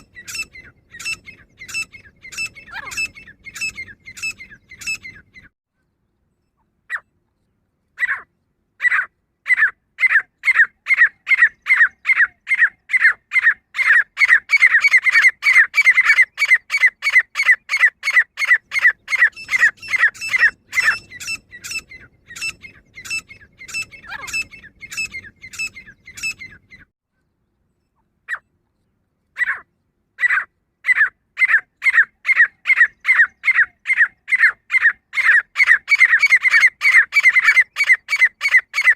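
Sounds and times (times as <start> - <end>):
francolin calling: 0.0 - 5.5, 8.8 - 26.9.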